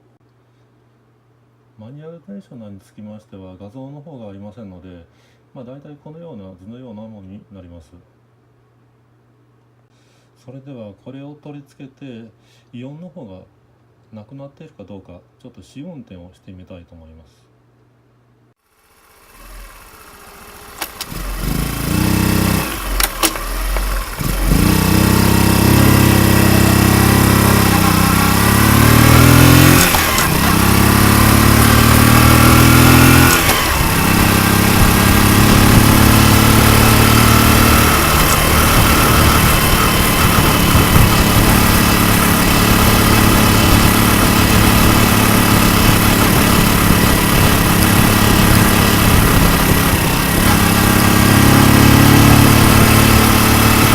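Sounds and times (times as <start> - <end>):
motorcycle engine starting and idling: 18.6 - 53.9.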